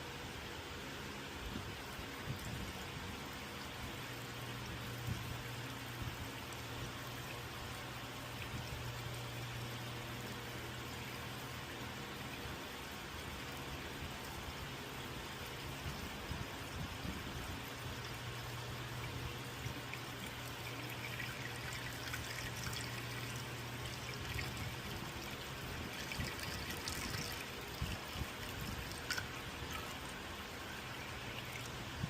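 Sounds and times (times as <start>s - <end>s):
small water splashes: 17.6s - 32.0s
water pouring into radiator: 18.0s - 32.0s.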